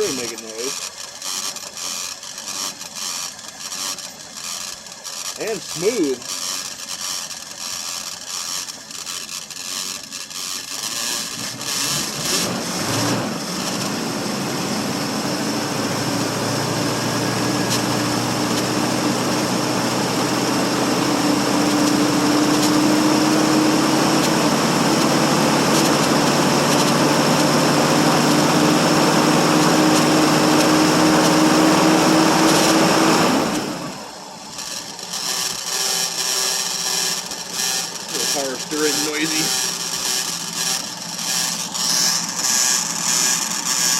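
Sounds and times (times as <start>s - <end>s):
car engine idling: 0.0s - 43.9s
power steering pump whine: 0.0s - 43.9s.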